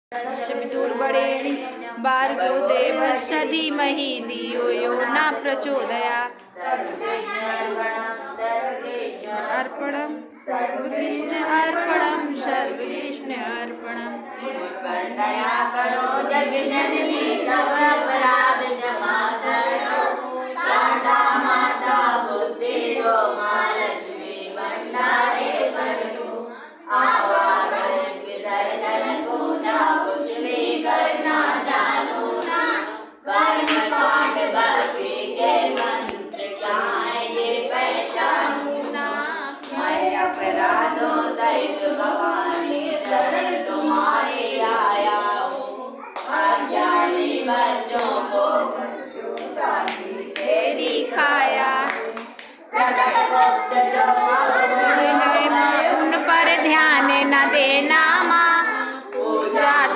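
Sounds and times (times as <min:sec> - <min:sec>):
group singing devotional song: 0:00.1 - 0:59.9
hands clapping: 0:33.6 - 0:34.0, 0:45.5 - 0:47.1, 0:47.9 - 0:48.2, 0:49.3 - 0:52.6.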